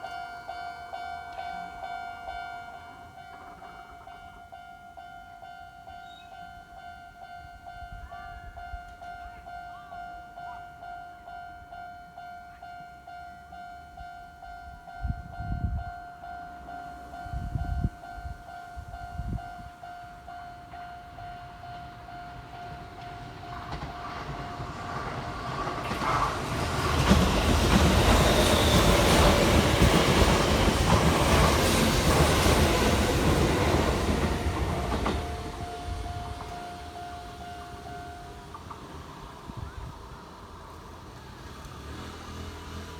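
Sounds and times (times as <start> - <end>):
level-crossing warning bell: 0.0 - 41.1
electric train passing: 0.0 - 42.9.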